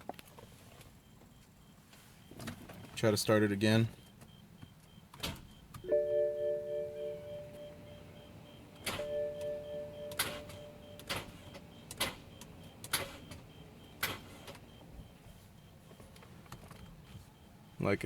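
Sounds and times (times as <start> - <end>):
steady hum: 5.8 - 16.2
man talking: 17.8 - 18.0.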